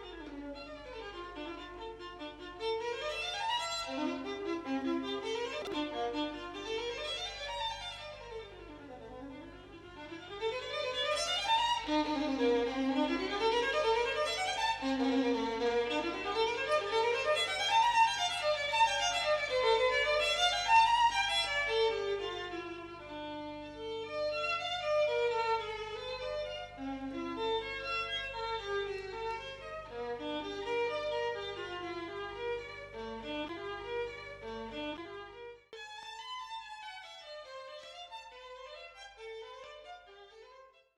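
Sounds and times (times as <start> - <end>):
faint low hum: 0.0 - 40.6
violin playing fast runs: 9.2 - 22.7.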